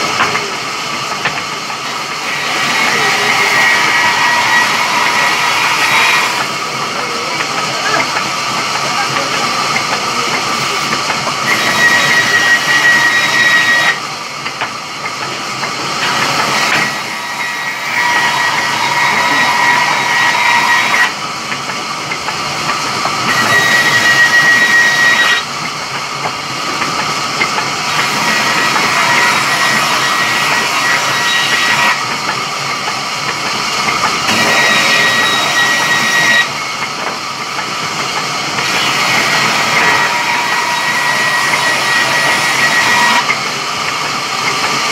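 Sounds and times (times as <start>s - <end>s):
saw cutting through wood: 1.2s - 14.1s, 15.5s - 21.3s, 22.1s - 25.5s, 26.6s - 44.9s.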